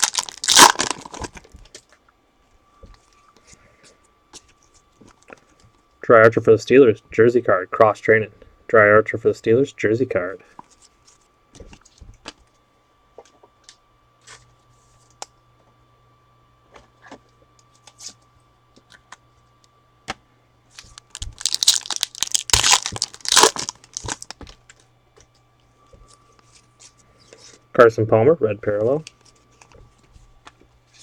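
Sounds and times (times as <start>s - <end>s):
foil pack tearing and crinkling: 0.0s - 1.5s, 20.8s - 24.5s.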